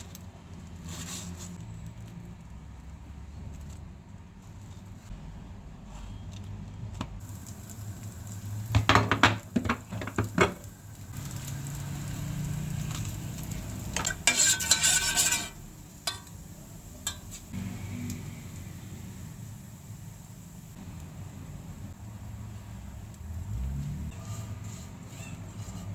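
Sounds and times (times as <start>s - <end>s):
food sizzling: 7.2s - 24.8s
utensil scraping a pan: 8.7s - 17.6s, 24.1s - 25.9s.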